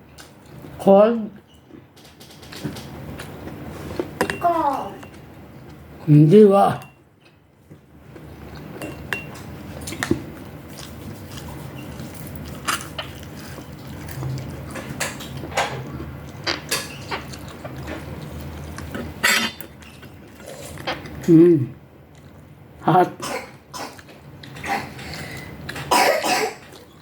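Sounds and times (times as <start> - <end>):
low background noise: 0.0 - 27.0
cutlery clinking on dishes: 19.2 - 20.2.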